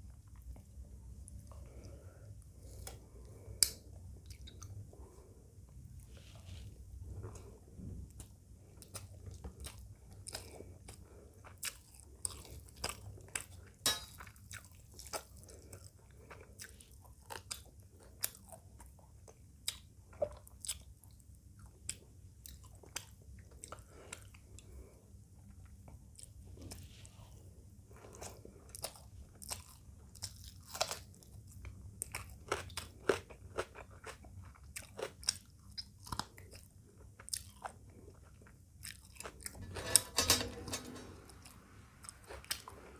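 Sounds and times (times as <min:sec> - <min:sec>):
person chewing and crunching: 0:02.6 - 0:05.4, 0:06.0 - 0:26.8, 0:27.9 - 0:39.7, 0:41.4 - 0:42.9.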